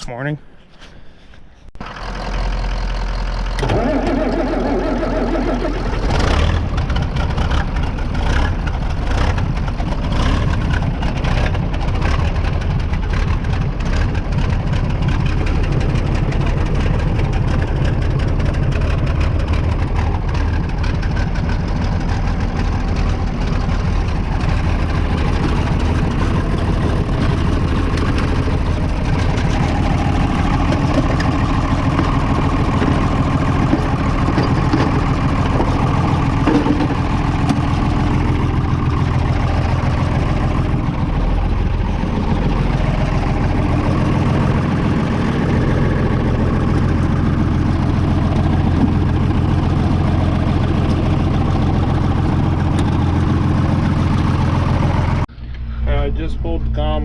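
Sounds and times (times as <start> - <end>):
tractor engine running: 0.0 - 57.0
starter motor cranking: 3.5 - 7.6.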